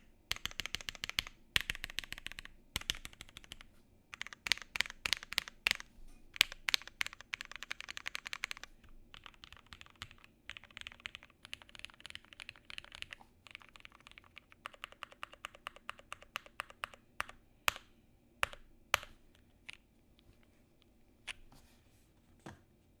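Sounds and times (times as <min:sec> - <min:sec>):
mechanical keyboard typing: 0:00.0 - 0:17.8.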